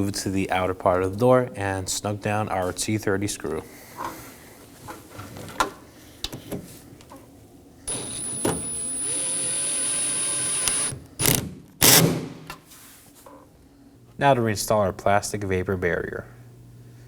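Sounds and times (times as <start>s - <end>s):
powered screwdriver whine: 7.9s - 12.0s.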